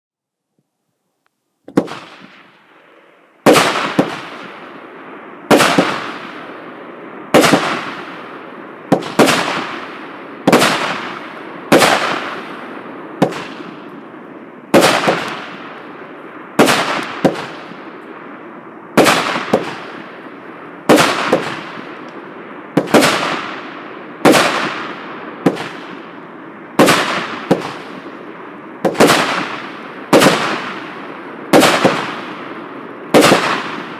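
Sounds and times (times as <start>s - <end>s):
firework bangs: 1.7s - 33.9s.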